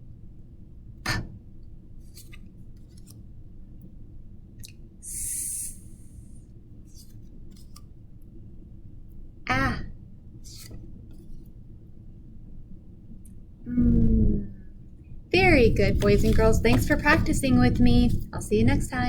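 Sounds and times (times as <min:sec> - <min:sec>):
low room hum: 0:00.0 - 0:19.0
short hiss: 0:05.1 - 0:06.3
handling noises: 0:15.4 - 0:18.0.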